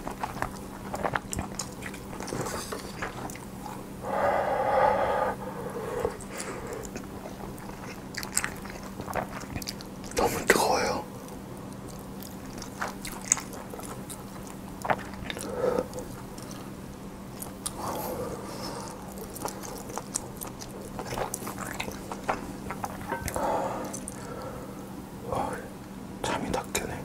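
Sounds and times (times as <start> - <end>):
person chewing and biting: 0.0 - 3.5, 6.1 - 10.2, 11.3 - 16.7, 17.3 - 24.5
faint steady hum: 0.0 - 27.0.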